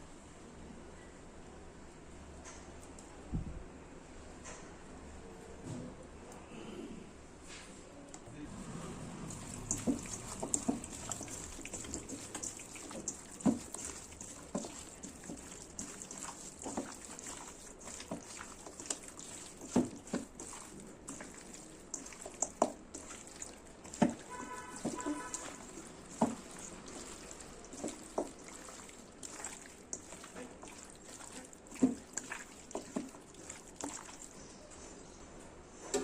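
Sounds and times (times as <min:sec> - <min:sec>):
water splashing: 0:08.5 - 0:34.4.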